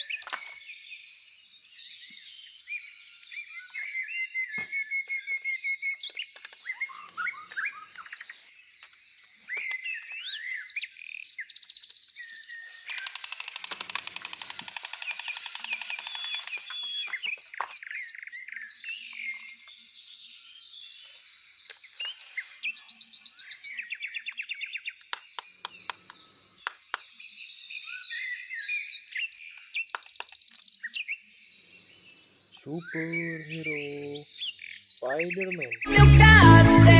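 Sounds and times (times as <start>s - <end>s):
birds chirping and trilling: 0.0s - 36.9s
loud rapid rattling bird call: 12.6s - 18.1s, 21.7s - 24.2s.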